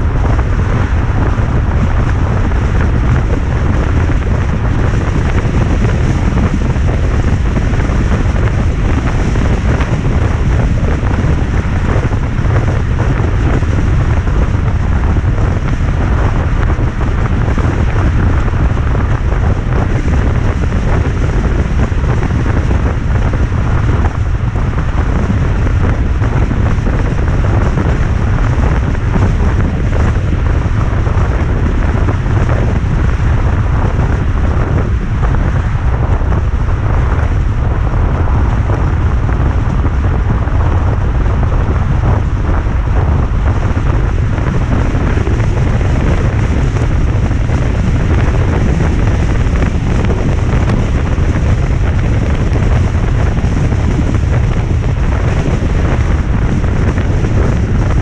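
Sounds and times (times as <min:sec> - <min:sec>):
wind buffeting microphone: 0:00.0 - 0:58.0.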